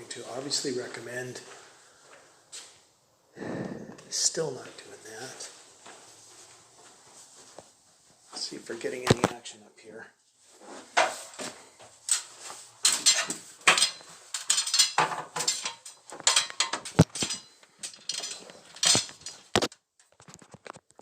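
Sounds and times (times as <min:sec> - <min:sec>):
sheet-metal cover clinking: 0:10.8 - 0:19.7.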